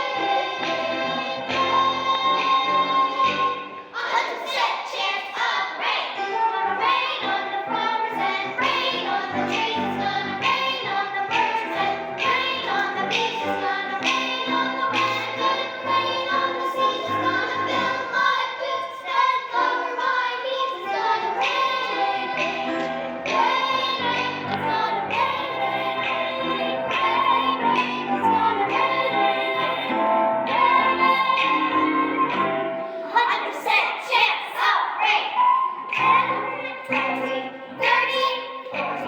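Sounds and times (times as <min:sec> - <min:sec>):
musical accompaniment: 0:00.0 - 0:33.8, 0:35.3 - 0:39.0
children singing: 0:00.0 - 0:39.0.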